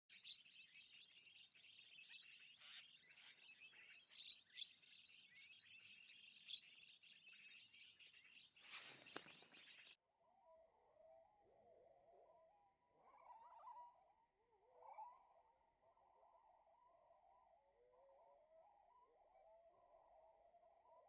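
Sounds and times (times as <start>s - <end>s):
flock of birds chattering: 0.1s - 10.0s.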